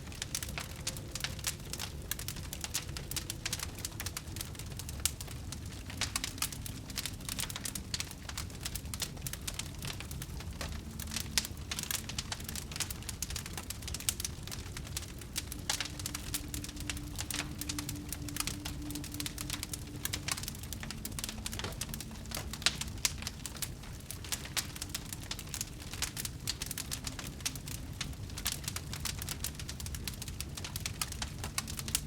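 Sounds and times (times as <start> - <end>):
low rumble: 0.0 - 28.4
fire crackling: 0.0 - 32.0.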